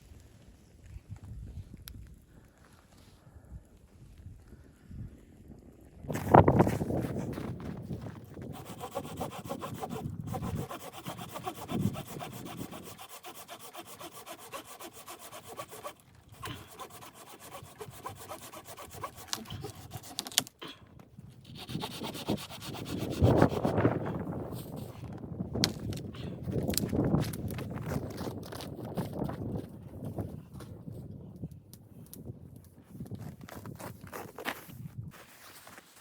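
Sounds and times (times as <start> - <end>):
saw cutting through wood: 8.4 - 20.5, 21.4 - 24.8.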